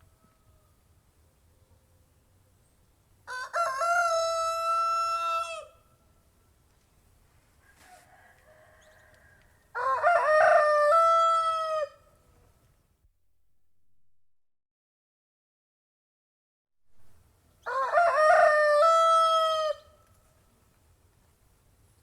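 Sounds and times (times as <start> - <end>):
rooster crowing: 3.3 - 5.8, 7.6 - 12.1, 17.6 - 20.0.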